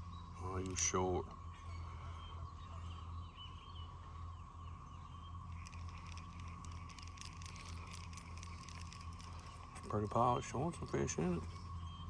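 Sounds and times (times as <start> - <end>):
faint bird chirps: 0.0 - 12.0
low electrical hum: 0.0 - 12.0.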